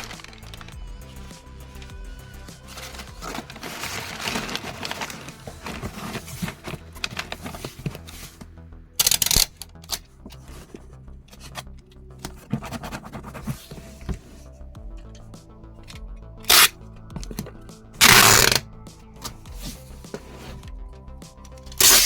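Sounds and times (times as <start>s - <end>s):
packing clicks and scrapes: 0.0s - 0.8s, 2.6s - 14.5s, 16.5s - 16.7s, 21.6s - 22.0s
background music: 0.0s - 22.0s.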